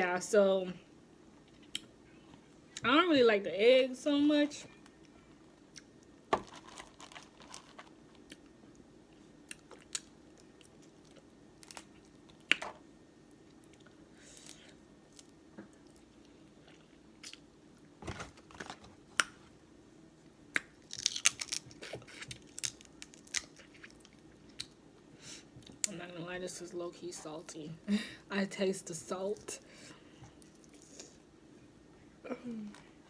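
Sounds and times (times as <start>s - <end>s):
faint steady hum: 0.0s - 33.0s
close chewing and mouth sounds: 20.5s - 24.8s, 29.3s - 31.2s.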